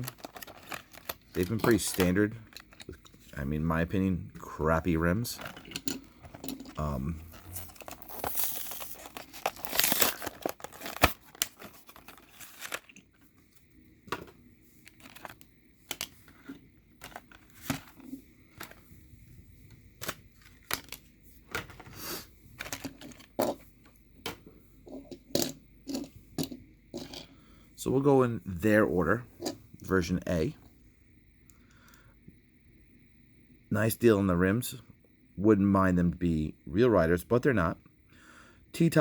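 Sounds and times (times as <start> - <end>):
packaging tearing: 0.0 - 2.6, 7.2 - 13.0
plastic crinkles and clicks: 0.0 - 3.2, 7.4 - 13.2, 14.1 - 16.3, 20.0 - 21.8.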